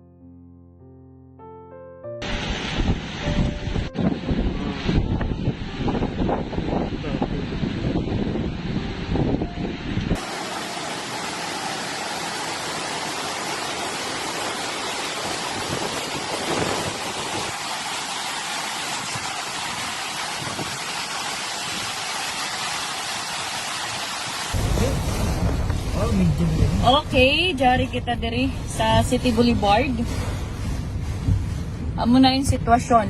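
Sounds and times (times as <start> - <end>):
wind buffeting microphone: 2.2 - 10.3, 14.3 - 17.9, 19.0 - 22.0, 24.5 - 33.0
heavy rain pouring: 2.2 - 32.1.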